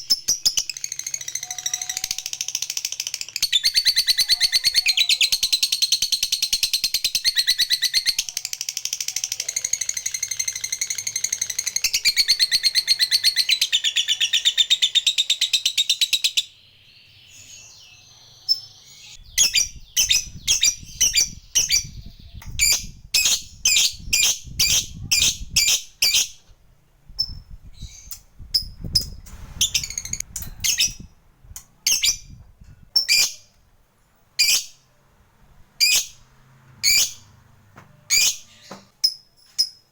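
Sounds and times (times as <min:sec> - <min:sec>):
bird chirps: 0:00.0 - 0:26.5
bird chattering trill: 0:00.1 - 0:16.5.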